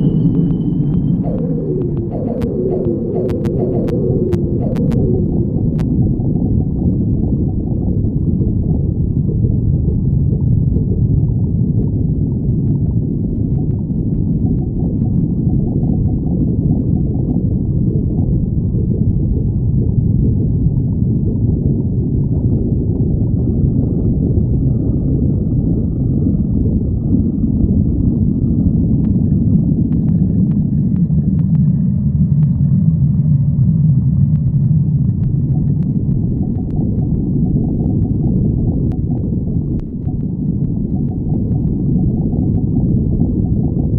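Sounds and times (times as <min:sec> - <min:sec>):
faint high-pitched tones: 0:00.0 - 0:06.8
stomach growling: 0:00.0 - 0:43.9.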